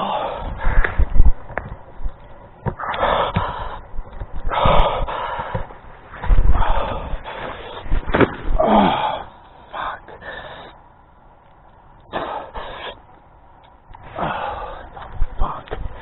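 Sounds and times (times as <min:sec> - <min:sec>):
person gasping and sighing: 0:08.5 - 0:10.5, 0:14.0 - 0:15.8.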